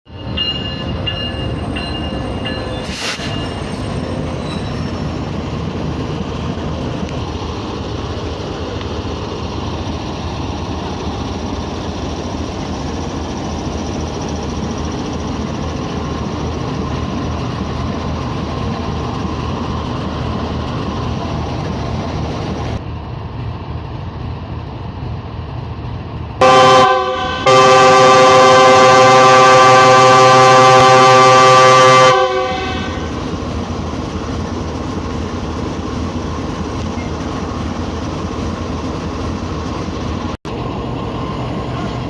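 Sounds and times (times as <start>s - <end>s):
locomotive engine rumbling: 0.1s - 42.0s
train air horn blasts: 26.4s - 33.1s.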